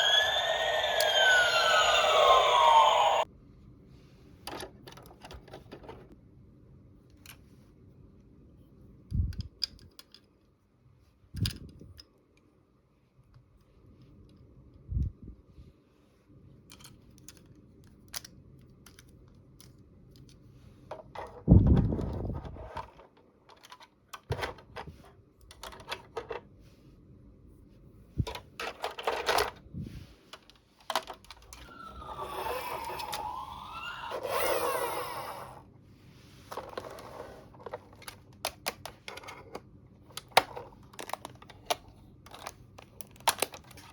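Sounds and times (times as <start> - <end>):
plastic toys clicking and tapping: 37.6 - 43.9.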